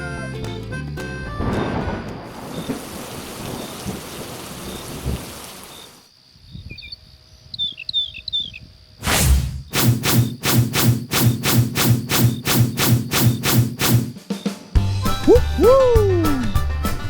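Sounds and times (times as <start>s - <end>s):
steady rain: 1.4s - 6.1s
bird chirps: 6.5s - 8.7s.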